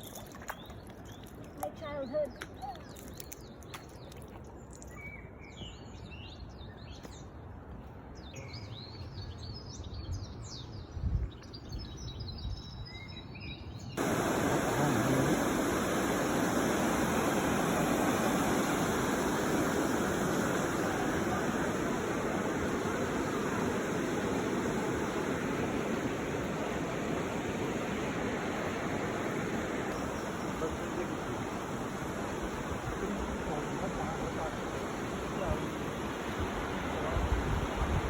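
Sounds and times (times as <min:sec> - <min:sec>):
small birds chirping: 0:00.0 - 0:07.4, 0:29.0 - 0:35.9
river water rushing: 0:14.0 - 0:38.0.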